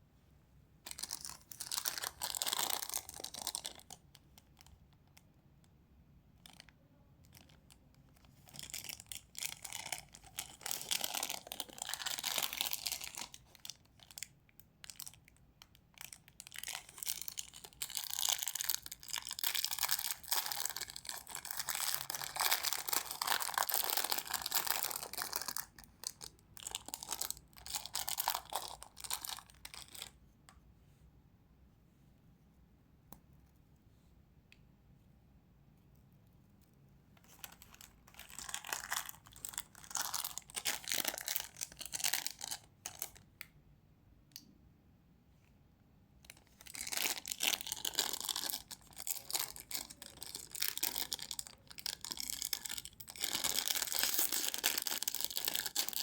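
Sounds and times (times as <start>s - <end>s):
plastic wrappers crackling: 16.4s - 30.1s.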